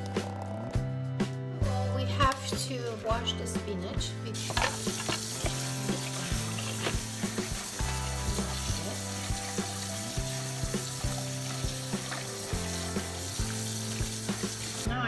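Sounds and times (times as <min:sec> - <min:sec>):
background music with beat: 0:00.0 - 0:15.0
tap water running: 0:04.4 - 0:15.0.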